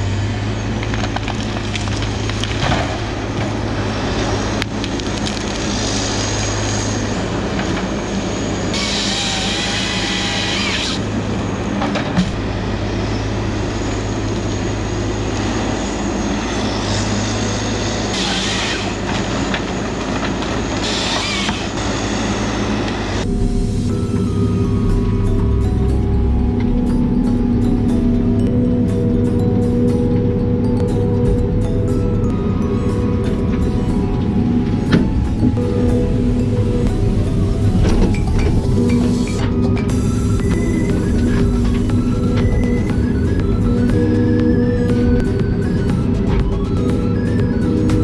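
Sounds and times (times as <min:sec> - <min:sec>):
harvester diesel engine running: 0:00.0 - 0:48.0
high hiss bursts: 0:03.6 - 0:11.0, 0:12.5 - 0:19.4, 0:33.7 - 0:44.2.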